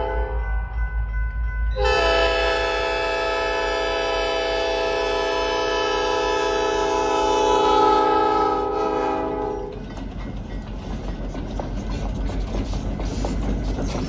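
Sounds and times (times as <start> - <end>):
train rumbling past: 0.0 - 14.0
locomotive horn: 1.8 - 9.8.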